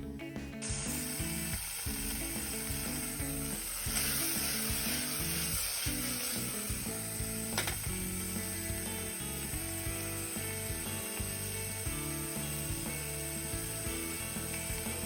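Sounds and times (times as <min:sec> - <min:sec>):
food frying sizzle: 0:00.0 - 0:15.0
soft background music: 0:00.0 - 0:15.0.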